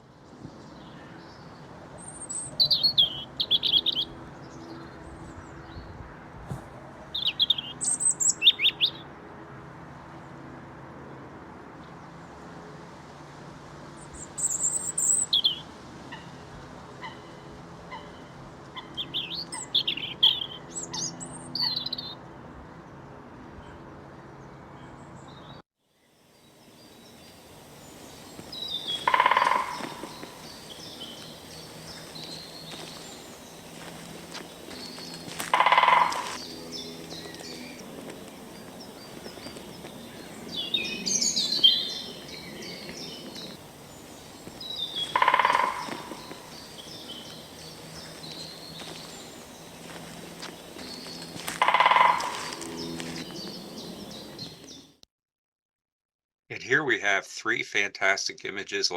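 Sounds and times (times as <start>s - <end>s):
songbirds chirping: 0.0s - 6.0s, 7.1s - 9.2s, 11.8s - 55.0s
steady low hum: 26.3s - 54.7s
loud bird call: 27.0s - 54.9s.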